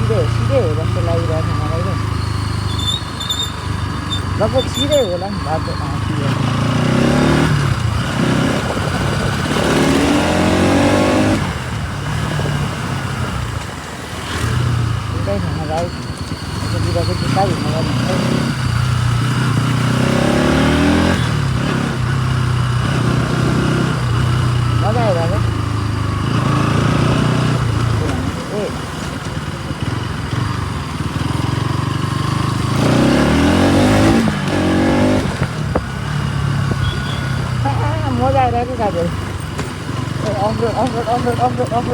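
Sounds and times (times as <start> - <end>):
motorcycle engine accelerating: 0.0 - 41.9
wind rush on microphone: 7.6 - 10.3.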